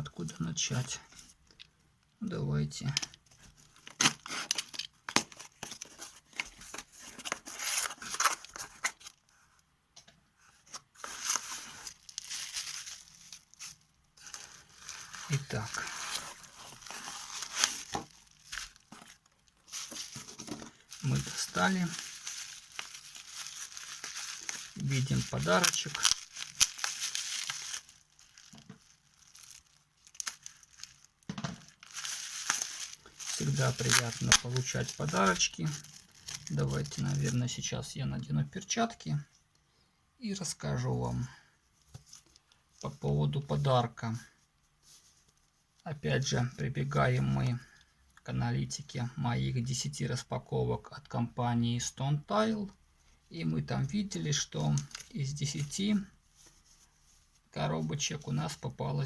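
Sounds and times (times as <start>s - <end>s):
packaging tearing and rustling: 3.0s - 9.3s, 10.9s - 37.4s, 54.6s - 55.8s.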